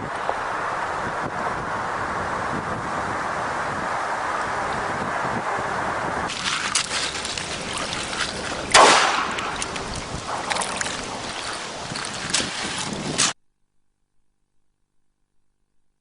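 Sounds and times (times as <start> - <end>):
wind buffeting microphone: 0.0 - 13.4
loud sudden bang: 8.7 - 9.4.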